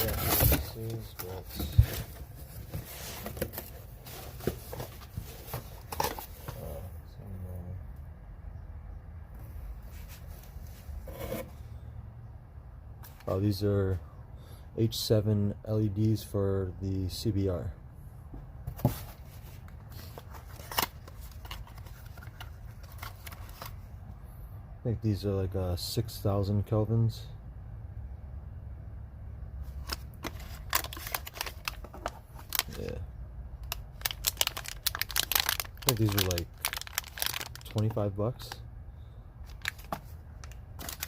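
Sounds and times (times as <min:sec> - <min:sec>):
packaging rustling and crinkling: 0:18.8 - 0:23.8, 0:29.8 - 0:33.0, 0:33.6 - 0:38.5, 0:39.5 - 0:41.0.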